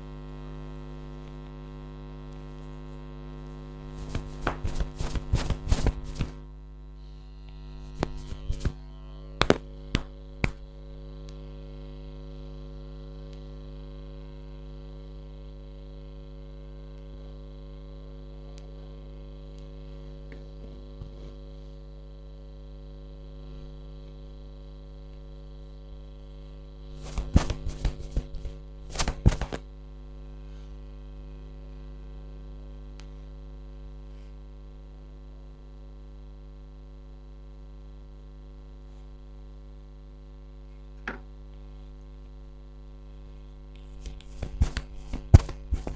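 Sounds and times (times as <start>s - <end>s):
electrical mains hum: 0.0s - 45.9s
sharp smacks or cracks: 4.0s - 6.4s, 8.0s - 8.8s, 9.4s - 10.6s, 27.0s - 29.6s, 43.8s - 45.9s.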